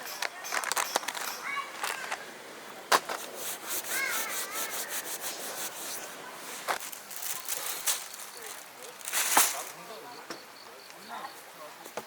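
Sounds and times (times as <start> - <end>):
rubbing or scraping strokes: 3.0 - 9.8.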